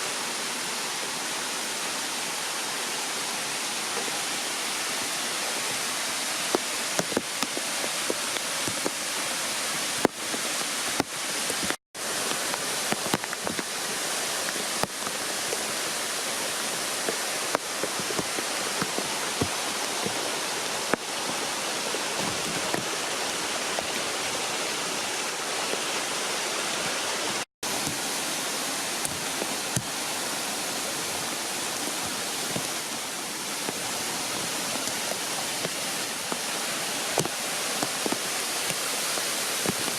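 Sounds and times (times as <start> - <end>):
waterfall rushing: 0.0 - 39.9
water splashing ticks: 6.4 - 23.1.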